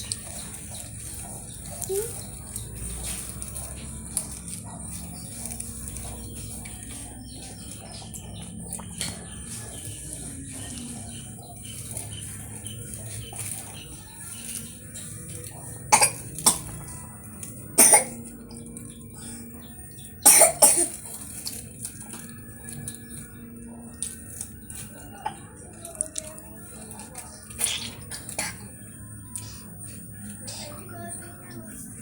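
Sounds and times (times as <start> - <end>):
person coughing: 15.9 - 16.7, 17.8 - 18.2, 20.2 - 21.0.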